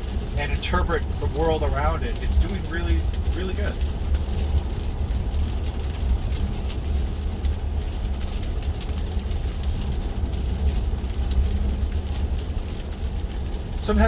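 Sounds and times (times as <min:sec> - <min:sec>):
wet road hiss: 0:00.0 - 0:03.9, 0:13.5 - 0:14.0
road and tyre rumble: 0:00.0 - 0:14.0.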